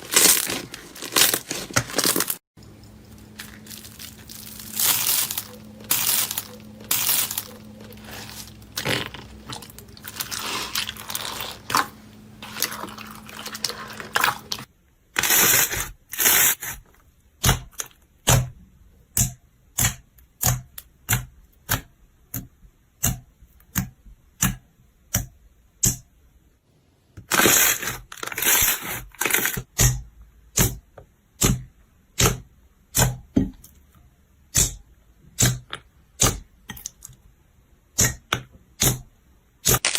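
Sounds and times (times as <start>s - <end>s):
slime crackling and crunching: 0.0s - 16.8s, 27.3s - 29.7s, 39.6s - 39.9s
squishy slime: 0.0s - 18.5s.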